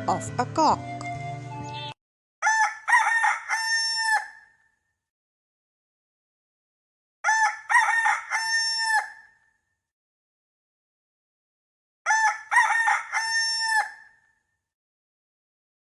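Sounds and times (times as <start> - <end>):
rooster crowing: 2.4 - 4.5, 7.2 - 9.3, 12.1 - 14.2.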